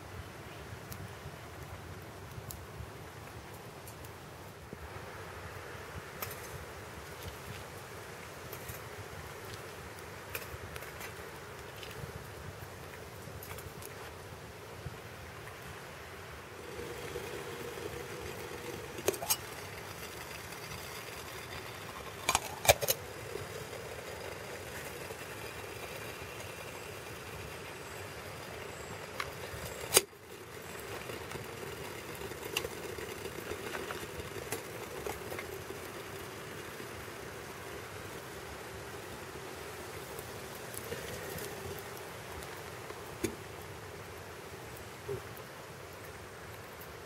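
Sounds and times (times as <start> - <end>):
stove burning with a roar: 0.2 - 47.0
sharp clicks and cracks: 9.5 - 12.0, 16.7 - 36.9.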